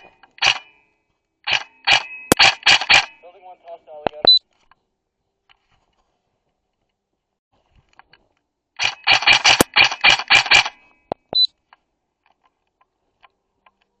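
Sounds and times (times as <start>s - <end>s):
sharp clicks: 0.0s - 0.7s, 1.4s - 3.2s, 7.9s - 13.9s
airsoft rifle shots: 1.5s - 3.2s, 8.8s - 10.8s.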